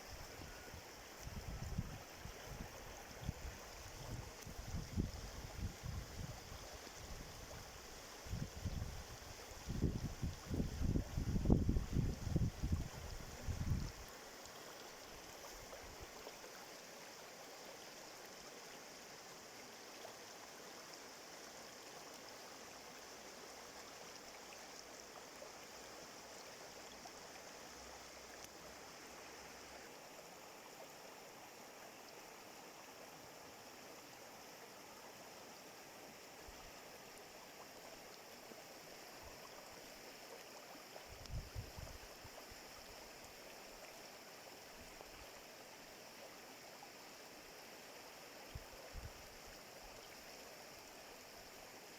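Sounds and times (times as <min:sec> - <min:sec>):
stream running water: 0:00.0 - 0:51.9
wind buffeting microphone: 0:09.7 - 0:13.9.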